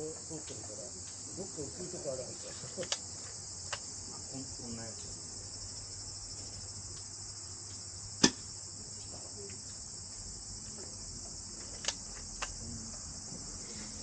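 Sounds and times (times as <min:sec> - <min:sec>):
crickets chirring: 0:00.0 - 0:14.0
sharp clicks: 0:03.7 - 0:03.9, 0:11.8 - 0:12.6.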